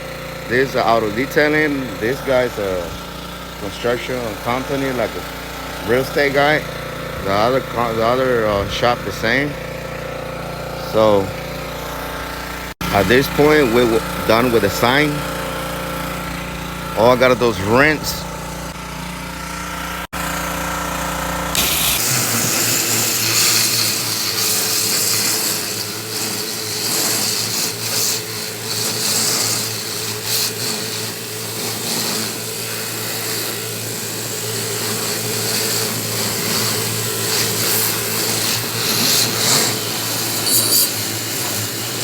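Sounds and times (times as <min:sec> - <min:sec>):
water jet hissing: 0:00.0 - 0:09.5, 0:21.5 - 0:42.0
pressure washer running: 0:00.0 - 0:42.0.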